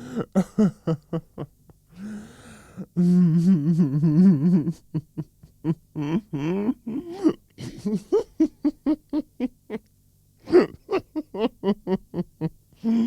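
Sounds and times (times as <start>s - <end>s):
woman laughing: 0.4s - 1.6s, 4.5s - 9.9s, 10.5s - 13.0s.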